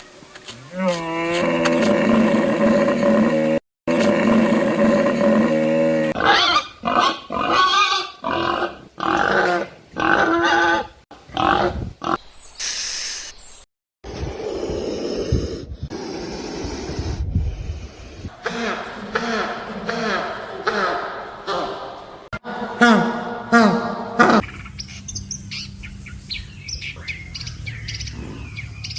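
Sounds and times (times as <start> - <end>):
rough low animal call: 26.7 - 28.9.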